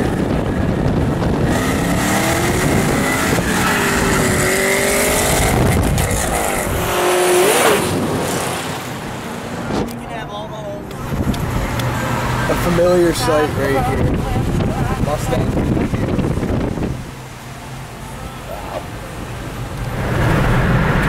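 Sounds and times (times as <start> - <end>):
car engine accelerating hard: 0.0 - 9.9, 19.6 - 21.0.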